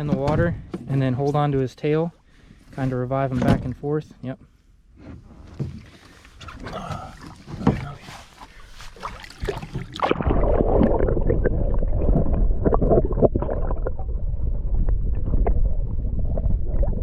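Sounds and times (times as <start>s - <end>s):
wind on microphone: 9.2s - 17.0s.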